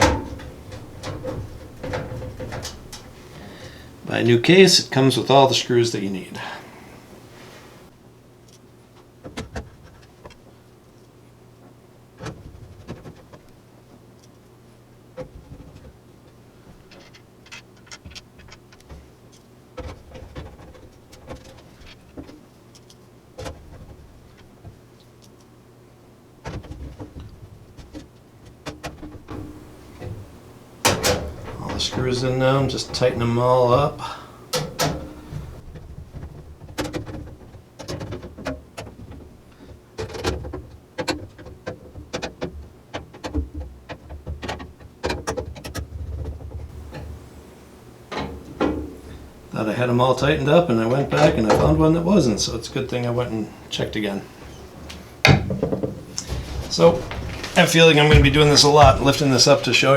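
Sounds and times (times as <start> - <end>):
handling knocks: 0.0 - 4.4, 26.5 - 39.3, 43.2 - 59.9.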